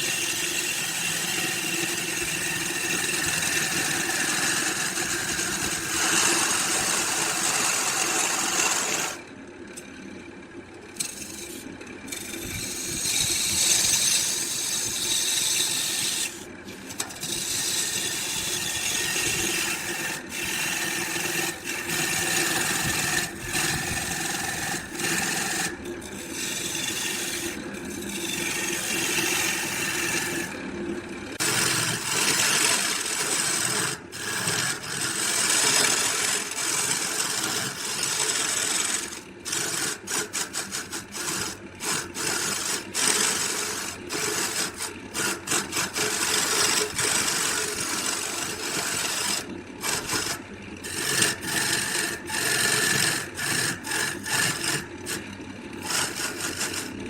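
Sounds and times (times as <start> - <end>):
woodworking machine running: 0.0 - 57.0.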